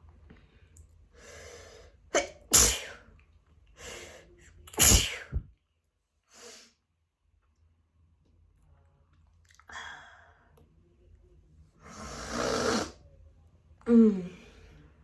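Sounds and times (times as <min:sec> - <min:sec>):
person sneezing: 0:02.2 - 0:03.0, 0:04.7 - 0:05.5.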